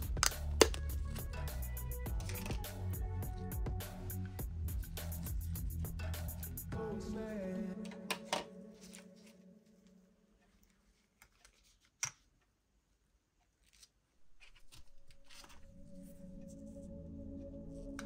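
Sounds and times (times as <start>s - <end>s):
background music: 0.0s - 10.2s, 15.0s - 18.0s.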